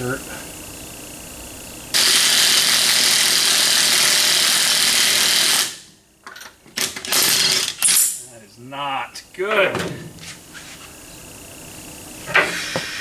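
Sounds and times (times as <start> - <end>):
power tool on lug nut: 1.9 - 5.9, 6.8 - 8.2.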